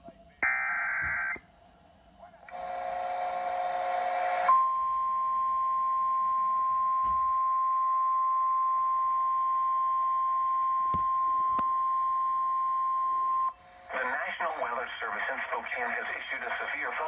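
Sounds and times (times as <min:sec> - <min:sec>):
steady pure warning tone: 0:02.4 - 0:14.8.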